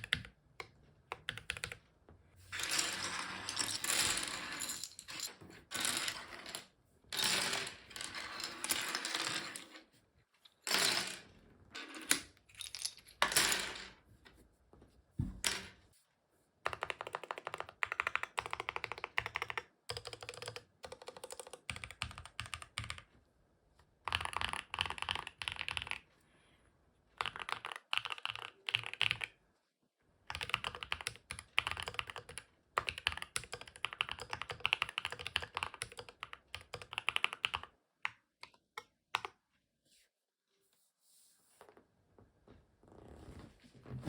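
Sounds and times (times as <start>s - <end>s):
mechanical keyboard typing: 0.0s - 1.8s, 16.7s - 23.1s, 24.0s - 26.0s, 27.2s - 29.4s, 30.3s - 37.7s.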